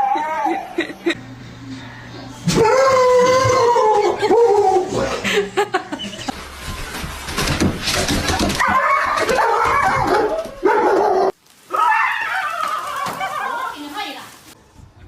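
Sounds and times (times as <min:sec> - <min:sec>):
dog barking and whining: 0:08.5 - 0:12.0.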